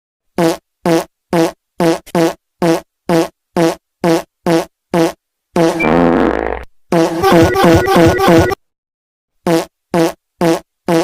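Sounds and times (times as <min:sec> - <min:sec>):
long drawn-out fart: 0:00.4 - 0:07.6, 0:09.4 - 0:11.0
short fart sounds: 0:00.4 - 0:07.8, 0:09.4 - 0:11.0.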